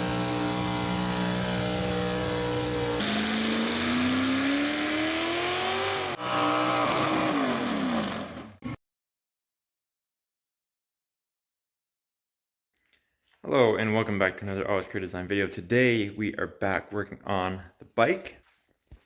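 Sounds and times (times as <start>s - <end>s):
vehicle engine revving: 0.0s - 8.6s.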